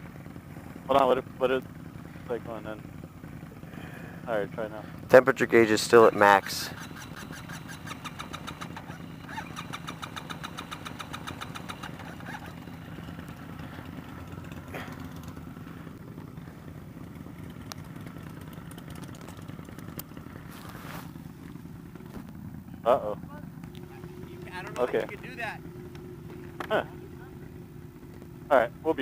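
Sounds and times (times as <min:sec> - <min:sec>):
low engine hum: 0:00.0 - 0:29.0
electric starter cranking engine: 0:05.7 - 0:15.4.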